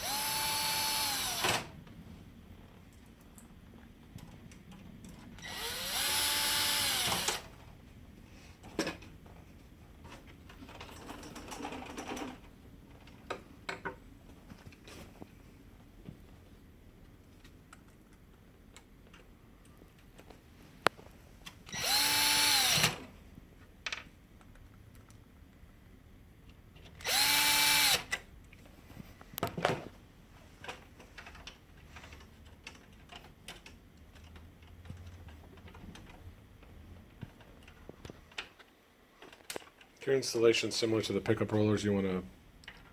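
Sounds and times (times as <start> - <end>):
electric screwdriver running: 0.0 - 1.7, 5.4 - 7.5, 21.7 - 23.0, 27.0 - 28.1.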